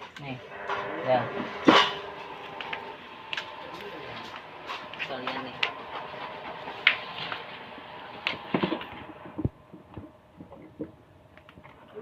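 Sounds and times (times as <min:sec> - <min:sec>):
gate opener motor running: 0:00.4 - 0:09.5.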